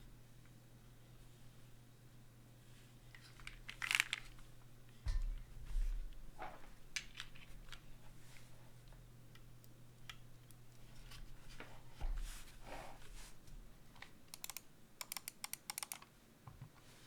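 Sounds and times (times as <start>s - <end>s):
low electrical hum: 0.0s - 17.0s
crinkling rustle: 3.1s - 4.5s.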